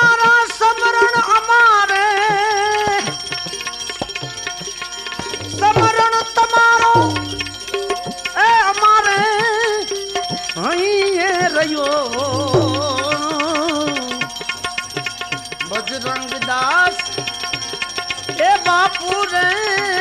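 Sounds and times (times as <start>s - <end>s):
tabla strokes: 0.0s - 20.0s
devotional melody wavering in pitch: 2.3s - 11.4s
deep bass drum thumps: 5.4s - 6.1s, 6.8s - 7.6s.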